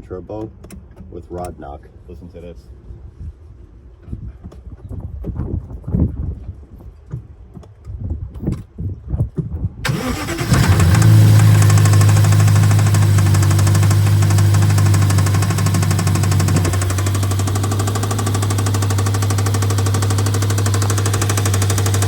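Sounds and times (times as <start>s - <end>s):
car engine idling with knock: 9.9s - 22.0s.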